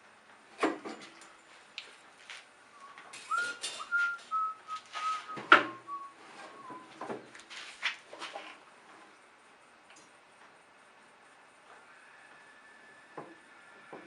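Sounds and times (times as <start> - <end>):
person whistling: 2.8 - 7.0.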